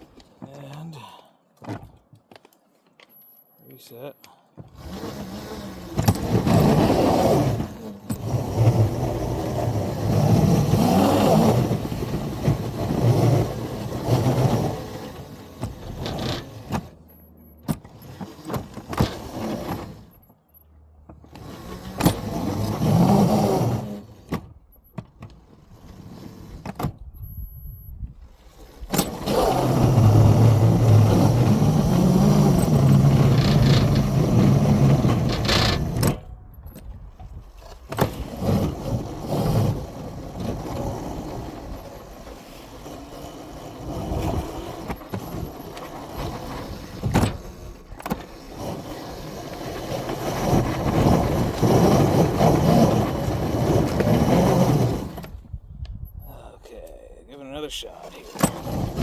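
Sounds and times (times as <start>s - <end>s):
locomotive motors surging: 28.5s - 36.8s.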